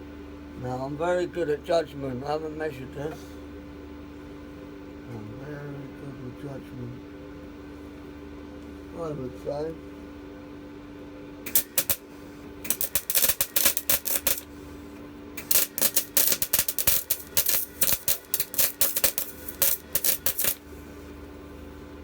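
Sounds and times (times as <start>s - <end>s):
steady hum: 0.0s - 22.0s
electric welder crackling: 11.4s - 20.7s.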